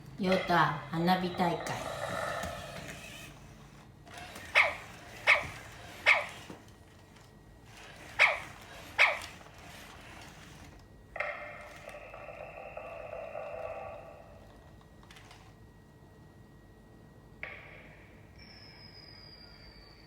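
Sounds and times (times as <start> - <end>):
robot dog barking: 4.2 - 6.6, 7.8 - 10.2.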